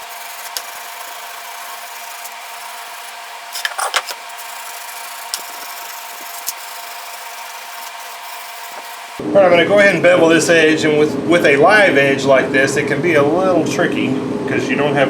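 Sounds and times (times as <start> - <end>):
louder scrapes on wood: 0.0 - 9.2
steel wool rubbing on wood: 0.0 - 9.2.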